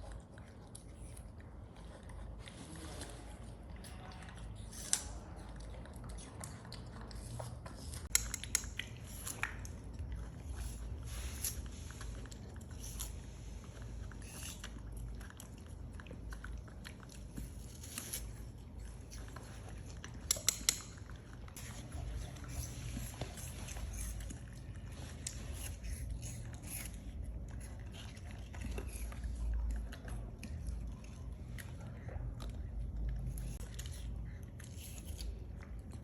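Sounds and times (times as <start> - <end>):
low steady hum: 0.0 - 36.0.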